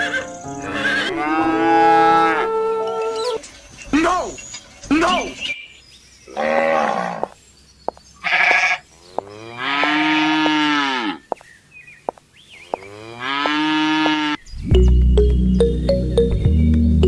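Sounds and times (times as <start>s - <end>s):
music: 0.0s - 1.2s, 14.6s - 17.0s
cow mooing: 0.0s - 3.4s, 6.3s - 7.3s, 8.2s - 11.2s, 12.8s - 14.4s.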